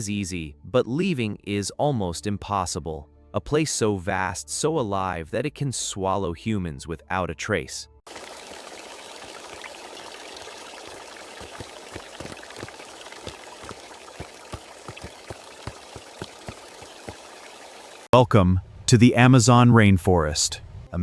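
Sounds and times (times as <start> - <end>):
running water hiss: 8.1 - 18.1
small water drips: 8.1 - 18.1.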